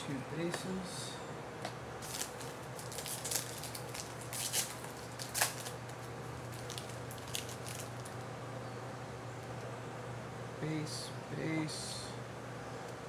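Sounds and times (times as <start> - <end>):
cards scraping and flicking: 2.0 - 8.1.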